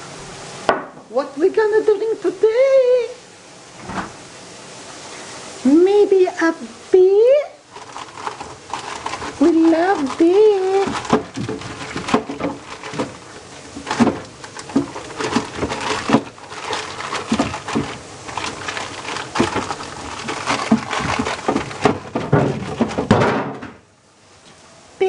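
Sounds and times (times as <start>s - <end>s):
objects knocking and clicking: 7.8s - 23.8s.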